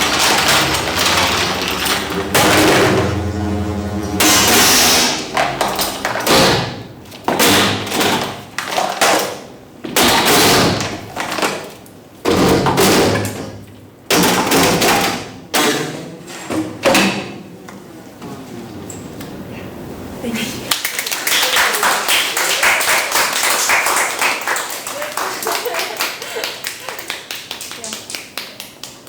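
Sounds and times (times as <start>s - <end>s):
ringing strikes on object: 0.7s - 6.5s.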